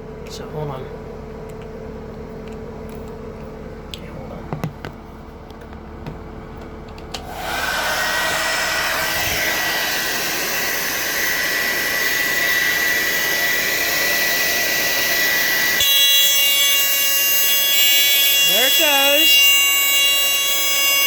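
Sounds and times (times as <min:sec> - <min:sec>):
hair dryer running: 0:07.1 - 0:21.0.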